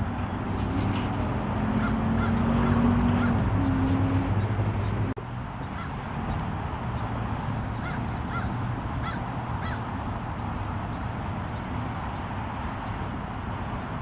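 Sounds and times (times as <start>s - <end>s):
bird calls: 7.7s - 9.9s.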